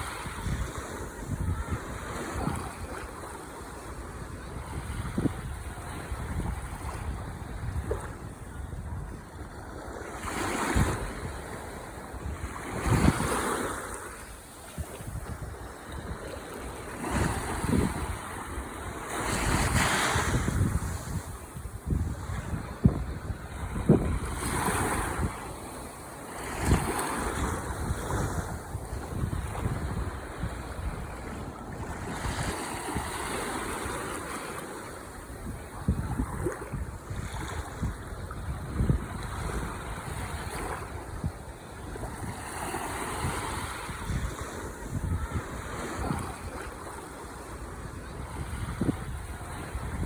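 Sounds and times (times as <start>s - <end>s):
ocean waves breaking on shore: 0.0s - 50.0s
wind rumbling on microphone: 0.0s - 50.0s.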